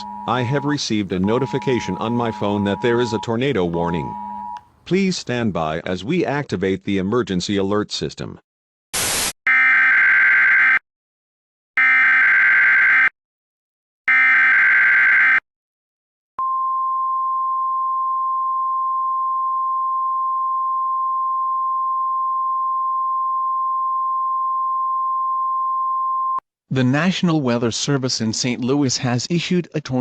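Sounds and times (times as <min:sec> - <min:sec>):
steady attention tone: 0:00.0 - 0:04.6.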